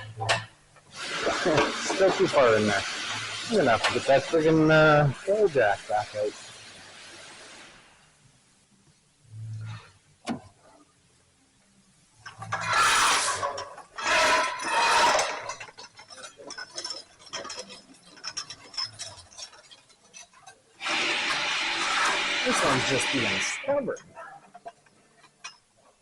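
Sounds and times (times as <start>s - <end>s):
hand tools clinking on metal: 12.3s - 20.9s.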